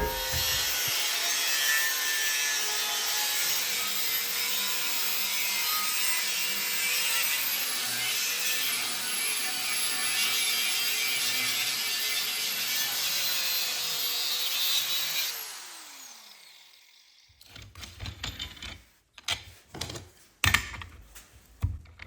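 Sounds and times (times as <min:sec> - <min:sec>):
angle grinder cutting steel: 0:00.0 - 0:17.3.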